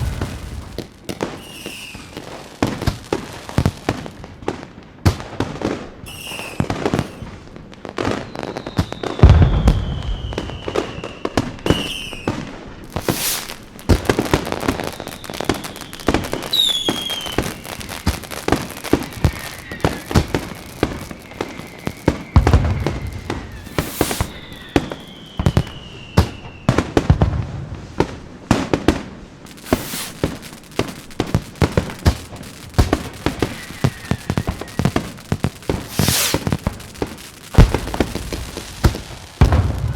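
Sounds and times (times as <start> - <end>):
deep booms of bursting shells: 0.0 - 2.2, 29.5 - 39.9
whistling rockets: 0.0 - 4.6, 5.2 - 28.2, 28.9 - 39.9
fireworks crackling and popping: 0.0 - 39.9.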